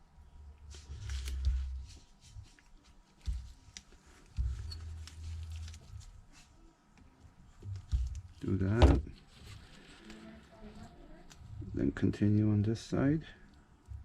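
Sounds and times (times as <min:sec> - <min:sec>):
adhesive tape ticks and rustling: 0:01.0 - 0:06.1.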